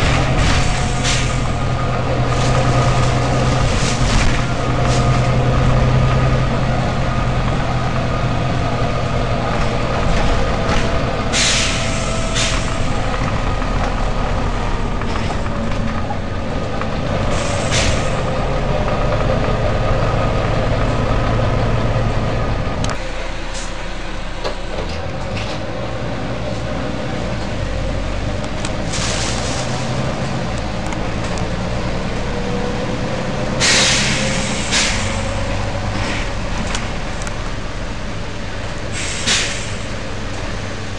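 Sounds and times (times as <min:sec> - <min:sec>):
diesel bus engine running: 0:00.0 - 0:40.9
air hiss bursts: 0:11.3 - 0:12.9, 0:17.3 - 0:18.2, 0:28.9 - 0:29.6, 0:33.6 - 0:35.3, 0:38.9 - 0:39.9.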